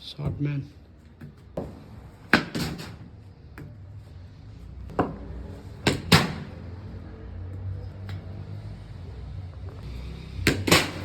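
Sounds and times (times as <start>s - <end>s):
bat striking cricket ball: 10.4s - 11.0s.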